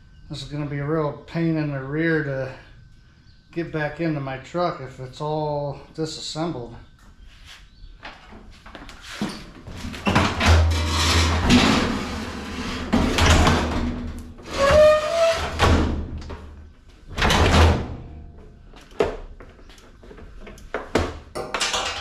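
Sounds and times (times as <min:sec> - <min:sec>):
appliance parts scraping and clattering: 0:09.1 - 0:16.3, 0:21.4 - 0:22.0.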